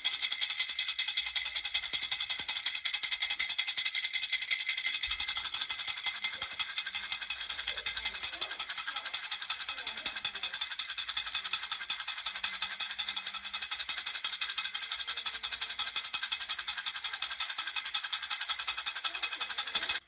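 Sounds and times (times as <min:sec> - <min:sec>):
baby rattle shaken: 0:00.0 - 0:20.0.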